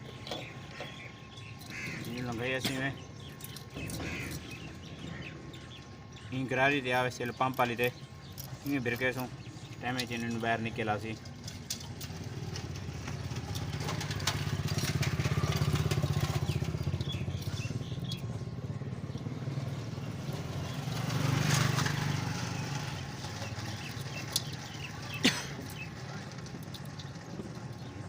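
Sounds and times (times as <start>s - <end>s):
sharp metallic clicks: 7.1s - 19.4s, 23.5s - 24.9s
small motorcycle engine running: 11.4s - 28.0s.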